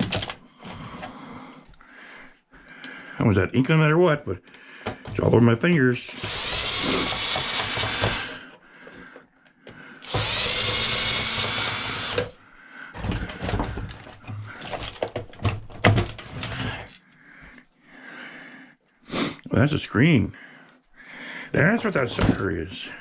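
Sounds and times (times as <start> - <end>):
parts knocking and clattering: 0.0 - 1.1, 4.8 - 12.3, 13.0 - 17.0
power drill backing out screws: 6.1 - 8.4, 10.0 - 12.4.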